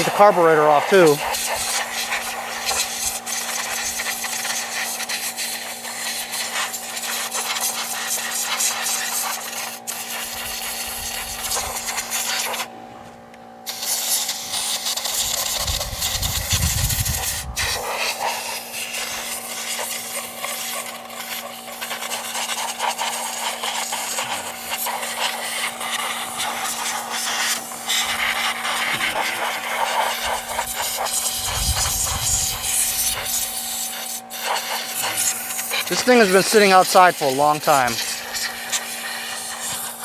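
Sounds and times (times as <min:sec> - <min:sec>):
compressed air hissing: 0:00.0 - 0:12.4, 0:13.7 - 0:40.0.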